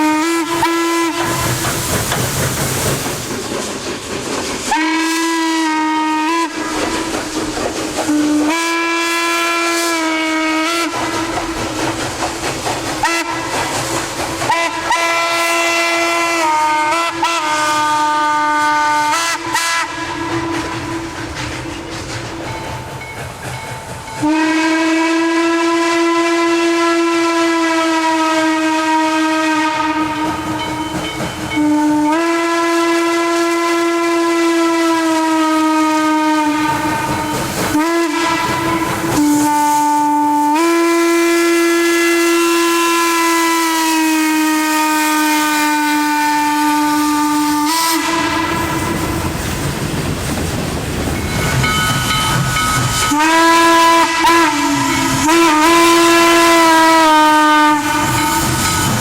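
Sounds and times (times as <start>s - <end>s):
steam locomotive whistle blasts: 0.0s - 1.9s, 4.7s - 7.1s, 8.0s - 11.4s, 13.0s - 13.7s, 14.5s - 21.3s, 24.2s - 49.4s, 51.5s - 59.0s
steam hiss: 0.0s - 59.0s.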